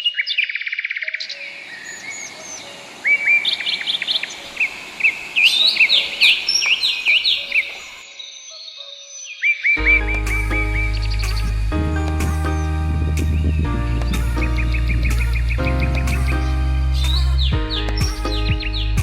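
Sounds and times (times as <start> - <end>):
birds chirping and calling: 0.0 - 19.0
steady rushing hiss: 1.6 - 8.0.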